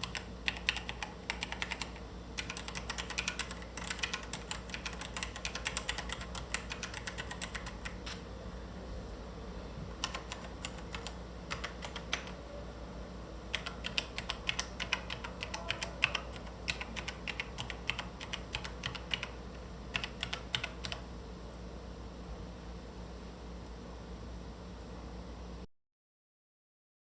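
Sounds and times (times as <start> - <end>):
mechanical keyboard typing: 0.0 - 8.2, 10.0 - 12.4, 13.5 - 21.0.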